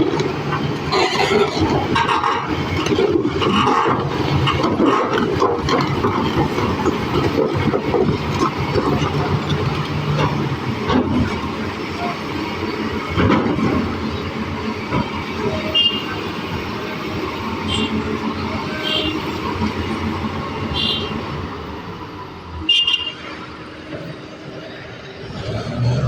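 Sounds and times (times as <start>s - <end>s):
excavator engine rumbling: 0.0s - 26.0s.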